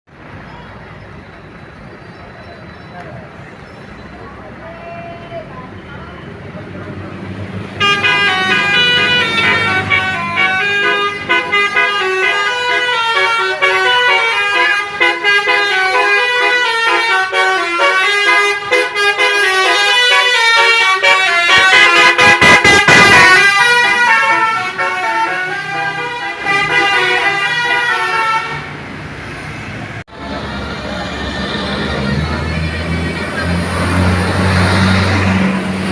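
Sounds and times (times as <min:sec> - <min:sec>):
musical air horn melody: 0:07.8 - 0:28.6.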